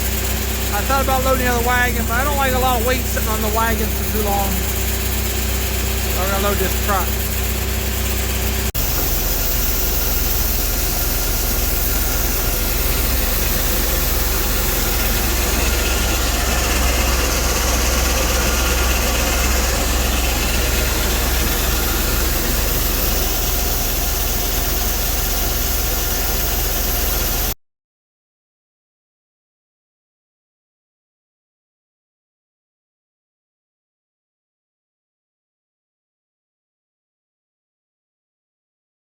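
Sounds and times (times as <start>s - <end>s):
heavy engine running: 0.0s - 27.6s.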